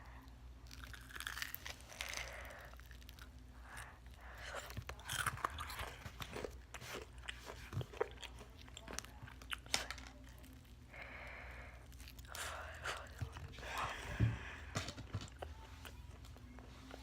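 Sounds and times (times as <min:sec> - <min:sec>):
crunching fried chicken: 0:00.6 - 0:10.8.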